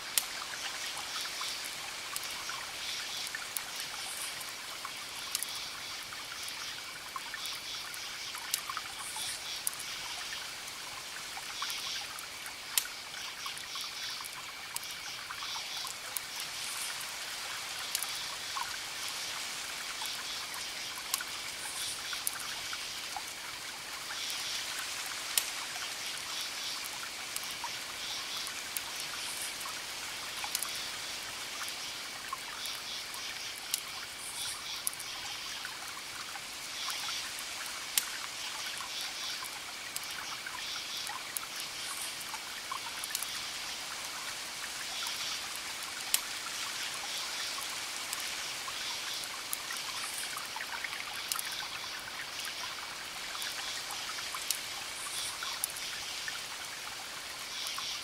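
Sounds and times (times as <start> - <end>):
wood fire crackling: 4.9 - 5.5, 15.7 - 18.6, 30.4 - 30.7, 41.3 - 43.4.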